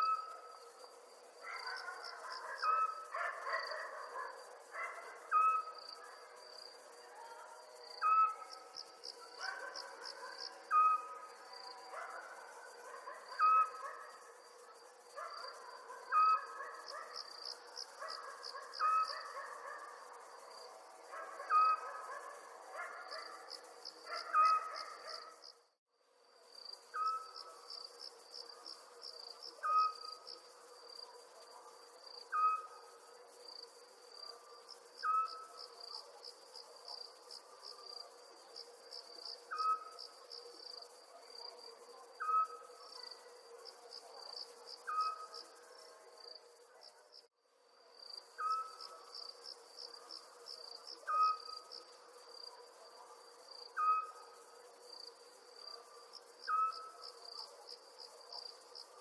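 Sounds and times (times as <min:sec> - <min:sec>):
crickets chirping: 0:00.0 - 0:59.0.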